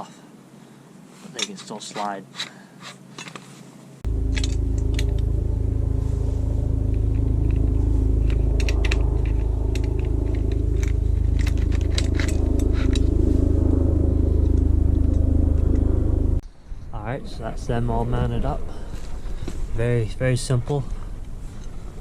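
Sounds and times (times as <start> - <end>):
metal parts clinking: 1.4 - 3.5, 4.3 - 5.2, 8.2 - 13.1
loud steady low hum: 4.0 - 22.0.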